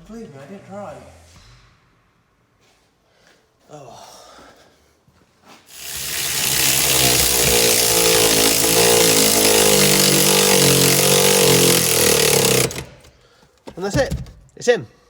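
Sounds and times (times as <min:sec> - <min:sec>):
electric power tool running: 0:05.7 - 0:13.1.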